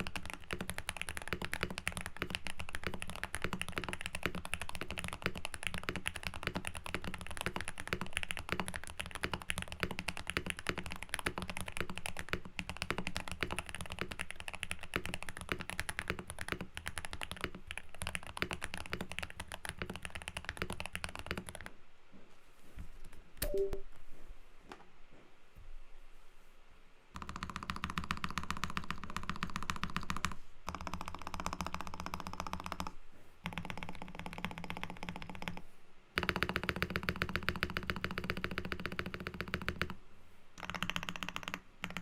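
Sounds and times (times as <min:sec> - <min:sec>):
mechanical keyboard typing: 0:00.0 - 0:21.7, 0:27.2 - 0:35.6, 0:36.2 - 0:40.0, 0:40.6 - 0:42.0
brief sharp tone: 0:23.4 - 0:23.9.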